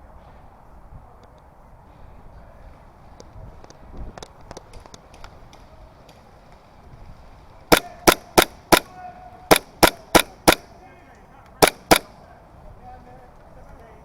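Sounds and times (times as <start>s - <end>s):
airsoft gun shots: 7.7s - 10.8s, 11.6s - 12.2s.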